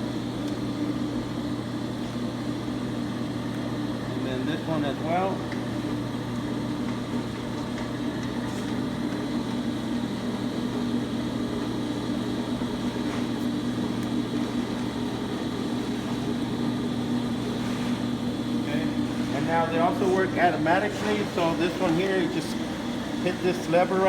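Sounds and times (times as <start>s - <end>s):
brake lathe motor humming: 17.4s - 24.0s.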